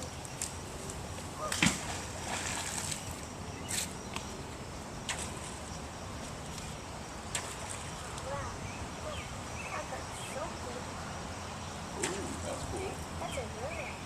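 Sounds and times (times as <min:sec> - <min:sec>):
water sloshing: 0:00.0 - 0:03.3.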